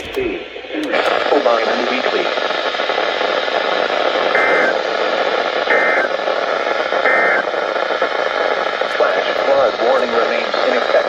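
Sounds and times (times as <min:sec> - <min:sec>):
radio static: 0:00.0 - 0:11.0
buzzy digital data bursts: 0:04.3 - 0:04.8, 0:05.7 - 0:06.1.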